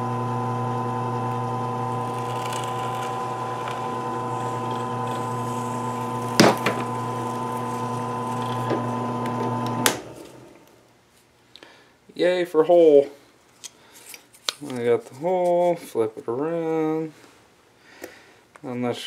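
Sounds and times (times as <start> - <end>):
electric drill boring through wood: 0.0 - 10.7.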